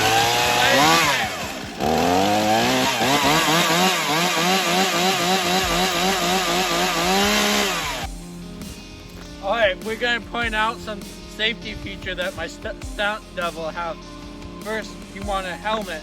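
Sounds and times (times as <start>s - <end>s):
chainsaw engine revving: 0.0s - 8.1s.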